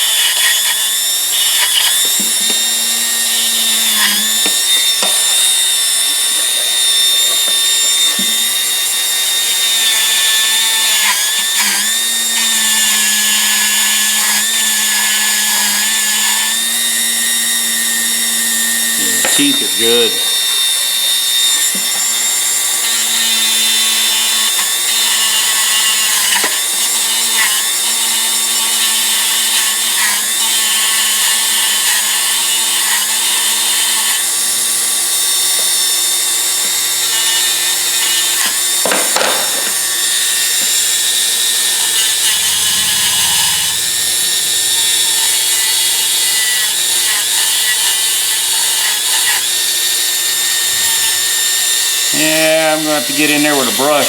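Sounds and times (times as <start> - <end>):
power tool grinding steel: 0.0 - 54.0
loud scraping burst: 41.5 - 46.0, 52.0 - 54.0.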